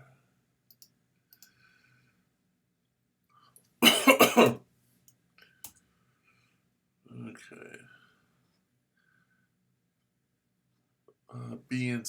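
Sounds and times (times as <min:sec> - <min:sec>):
faint clicks: 0:00.7 - 0:01.6
man coughing: 0:03.8 - 0:04.6.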